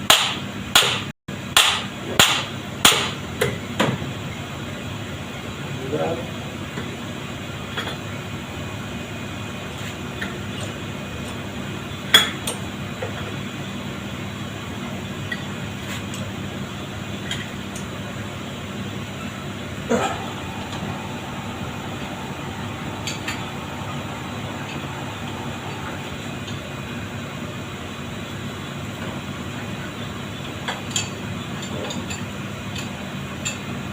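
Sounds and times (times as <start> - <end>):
steady low hum: 17.8 - 30.0.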